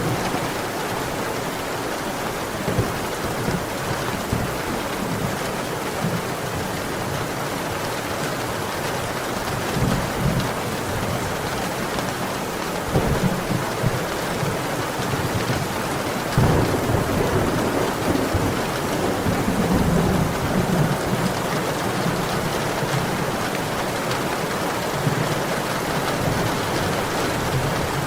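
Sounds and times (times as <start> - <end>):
thunder rumbling: 0.0 - 1.3, 12.8 - 23.2
steady rain pouring: 0.0 - 28.0.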